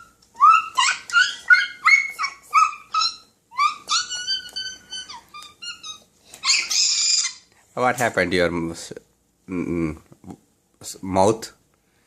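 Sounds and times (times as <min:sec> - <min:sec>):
small dog yipping: 0:00.0 - 0:07.4.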